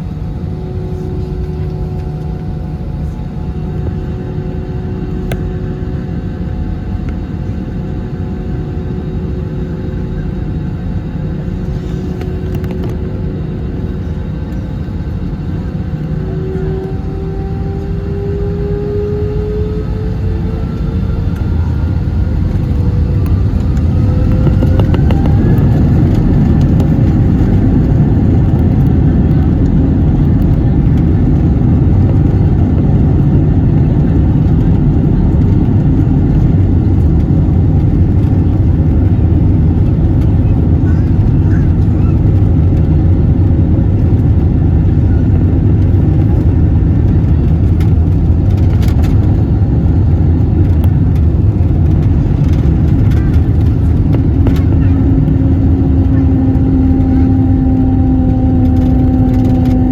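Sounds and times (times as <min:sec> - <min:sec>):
jet engines spooling up: 0:14.8 - 0:43.3.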